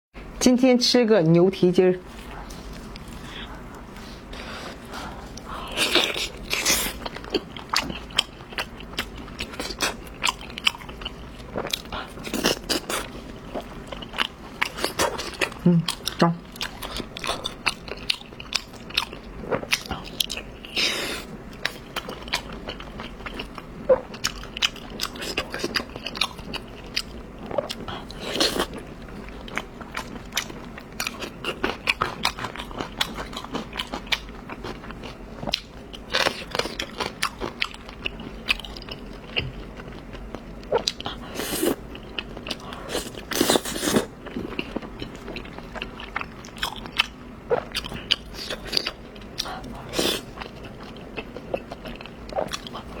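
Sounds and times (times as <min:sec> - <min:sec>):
person chewing: 0:02.2 - 0:53.0.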